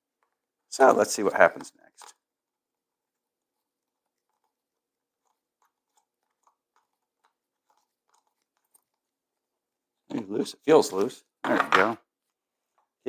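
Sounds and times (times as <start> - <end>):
faint small clicks and taps: 3.1 - 9.1.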